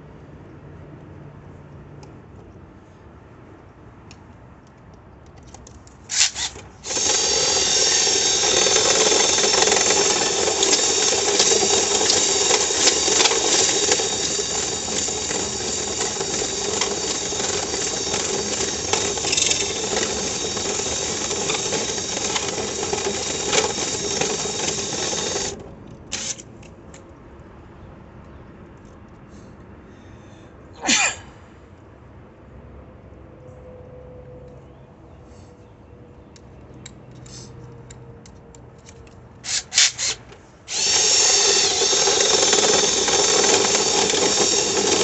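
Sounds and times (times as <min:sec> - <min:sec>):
power drill running: 0:06.1 - 0:25.6, 0:39.5 - 0:45.0.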